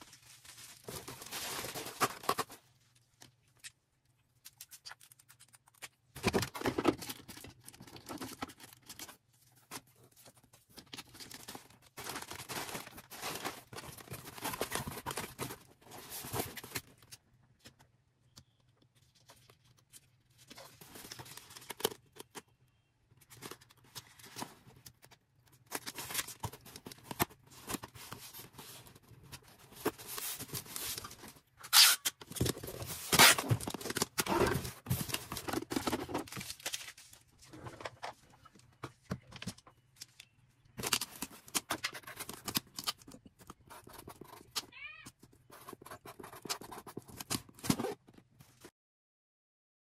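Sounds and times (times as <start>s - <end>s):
packaging rustling and tearing: 0.0s - 2.7s, 4.5s - 17.1s, 25.7s - 38.1s.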